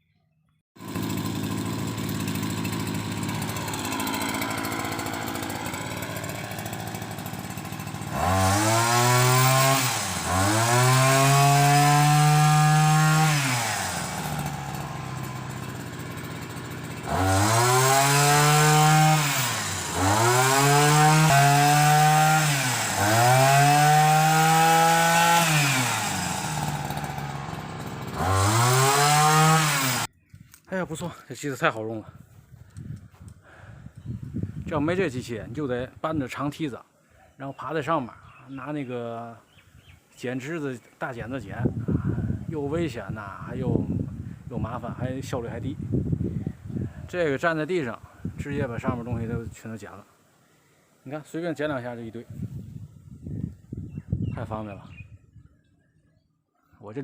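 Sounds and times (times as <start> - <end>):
small engine revving: 0.8 - 30.1.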